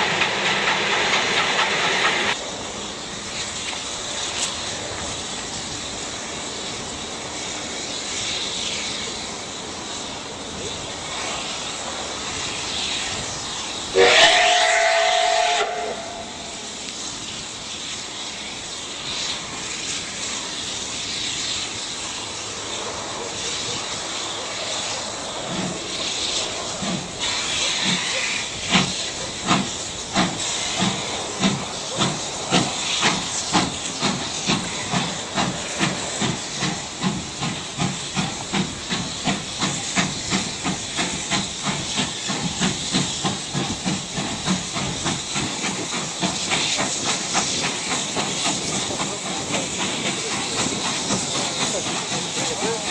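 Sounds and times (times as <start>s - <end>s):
steam hissing: 0.0s - 52.9s
steam locomotive whistle: 13.9s - 16.8s
locomotive exhaust chuffs: 23.2s - 52.9s.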